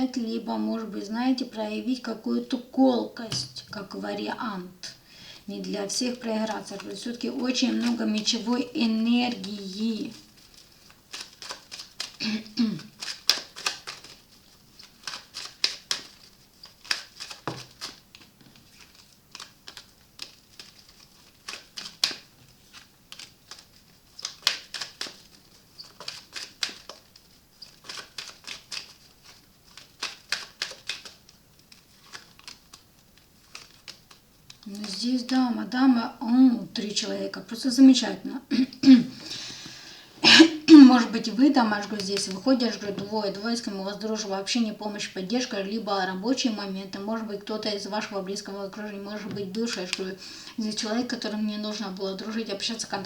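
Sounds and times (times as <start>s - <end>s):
cards being shuffled: 5.5s - 35.5s, 41.0s - 43.8s, 47.8s - 53.0s.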